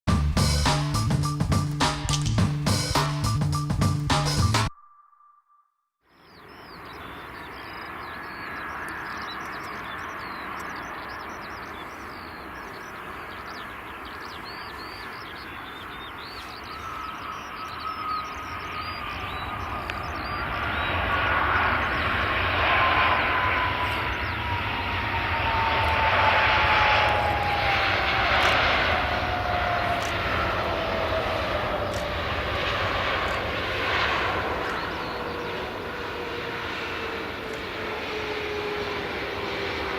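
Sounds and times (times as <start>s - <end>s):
jet engine whine falling in pitch: 6.2s - 39.9s
jet engines roaring: 6.4s - 39.9s.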